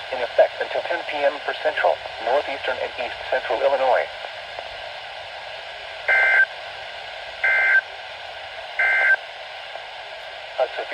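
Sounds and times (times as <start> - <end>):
radio receiver hiss: 0.0 - 4.7, 8.8 - 9.8.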